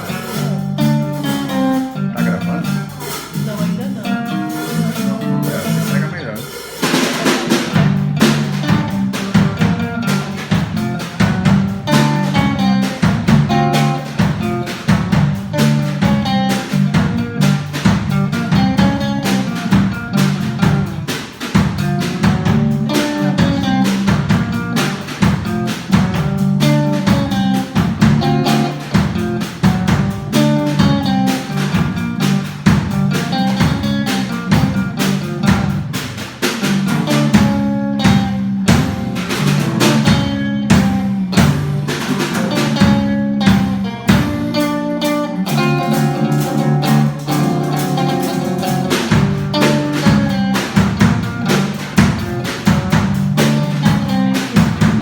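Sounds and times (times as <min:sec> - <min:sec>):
low bass line: 0:00.0 - 0:06.4
drum kit beat: 0:00.0 - 0:55.0
guitar: 0:00.0 - 0:55.0.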